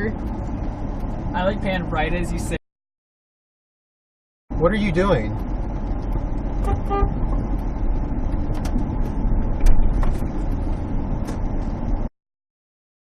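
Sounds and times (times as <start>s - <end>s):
car driving rumble from inside: 0.0s - 2.6s, 4.5s - 12.1s.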